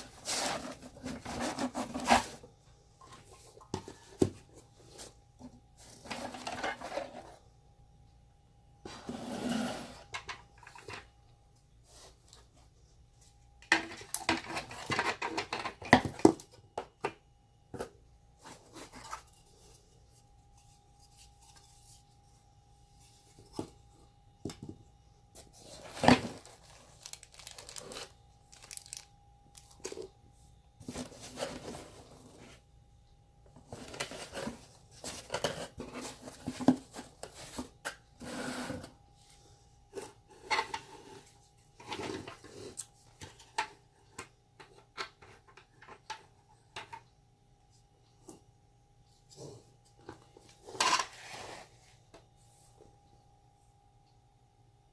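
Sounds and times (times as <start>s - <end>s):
packaging rustling and tearing: 25.7s - 30.0s.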